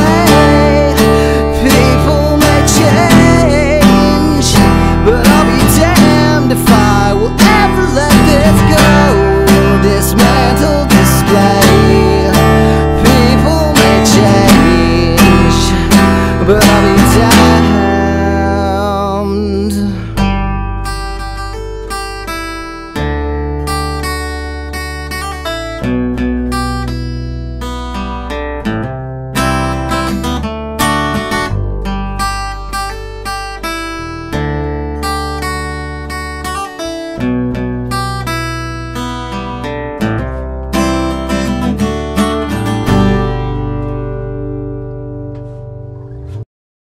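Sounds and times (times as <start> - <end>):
strummed guitar: 0.0 - 46.5.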